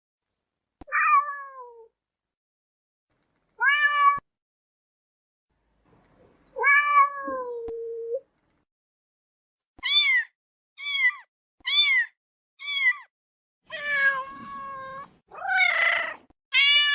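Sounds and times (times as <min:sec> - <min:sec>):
cat meowing: 0:03.6 - 0:04.2, 0:06.6 - 0:07.7, 0:09.8 - 0:13.1, 0:13.7 - 0:16.9.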